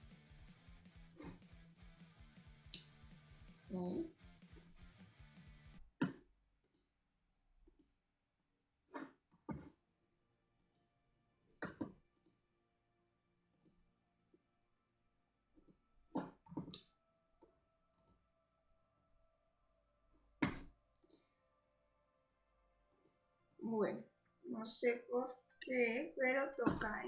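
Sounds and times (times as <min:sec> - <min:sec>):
computer clicks and taps: 0:05.3 - 0:06.9, 0:07.6 - 0:08.0, 0:10.6 - 0:10.9, 0:11.6 - 0:12.4, 0:15.6 - 0:16.8, 0:18.0 - 0:18.2, 0:22.9 - 0:23.7.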